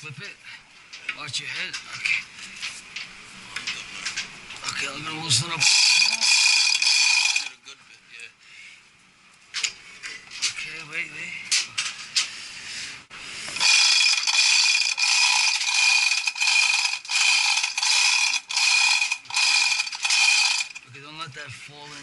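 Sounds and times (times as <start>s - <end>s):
ratchet clicking: 5.6s - 7.5s, 13.6s - 20.8s.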